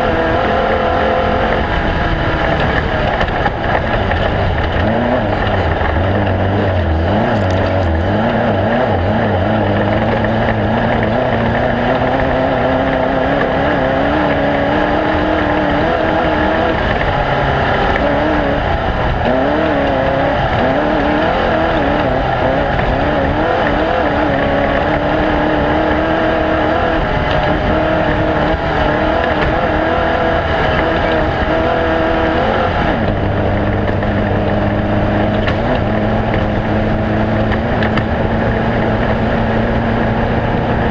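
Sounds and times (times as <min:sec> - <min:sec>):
race vehicle engine revving: 0:00.0 - 0:40.9.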